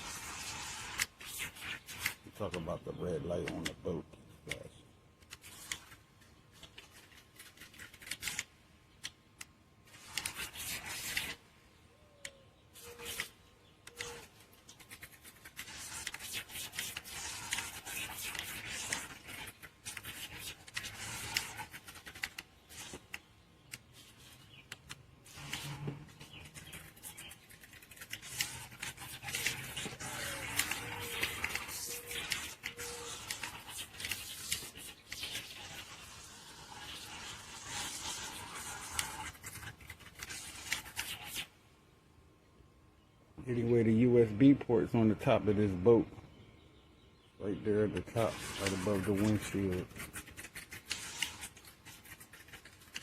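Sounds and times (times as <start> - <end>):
scattered clicks: 3.4 - 3.8
handling rustling and scraping: 4.5 - 8.6, 12.8 - 41.6, 47.9 - 53.0.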